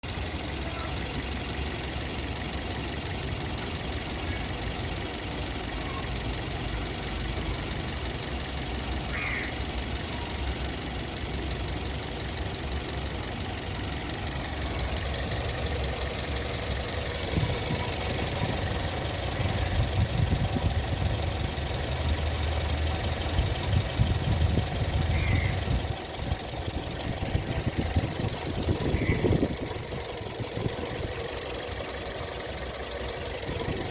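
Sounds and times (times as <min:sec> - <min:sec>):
car engine idling: 0:00.0 - 0:33.9.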